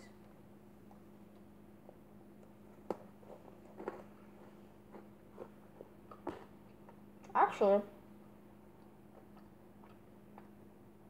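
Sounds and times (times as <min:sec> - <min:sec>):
steady low hum: 0:00.0 - 0:11.0
biting and chewing food: 0:08.7 - 0:10.7.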